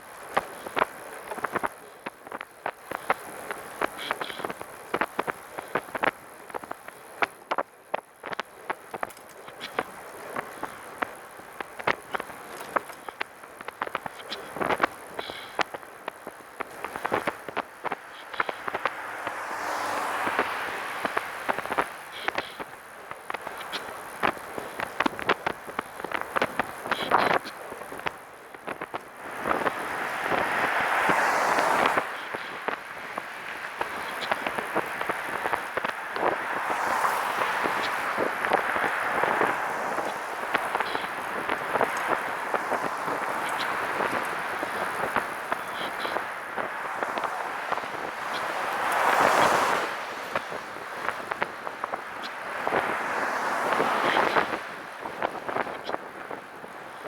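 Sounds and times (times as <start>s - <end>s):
wind and tyre hiss: 0.0s - 57.0s
trike rattling clicks: 5.9s - 18.0s.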